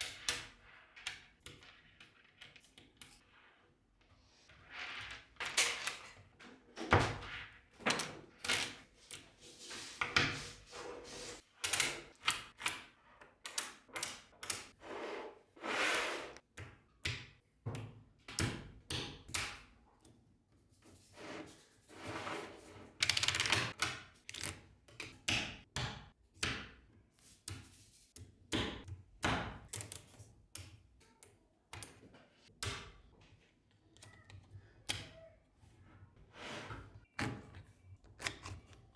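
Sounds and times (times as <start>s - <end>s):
balls rattling scrapes: 14.7s - 16.4s, 20.9s - 23.8s.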